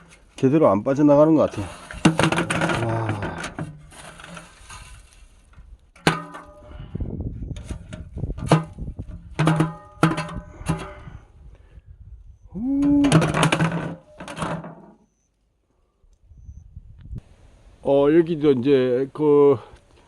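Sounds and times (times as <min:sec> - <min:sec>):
pipe scraping and rattling: 0:00.0 - 0:11.2, 0:12.8 - 0:15.0
metal flue pipe knocks: 0:06.0 - 0:06.7, 0:07.6 - 0:11.0.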